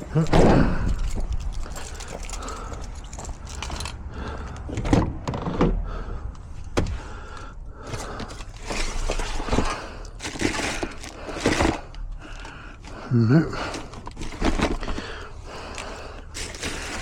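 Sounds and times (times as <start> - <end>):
items clattering while rummaging: 0.0 - 6.0, 6.6 - 17.0.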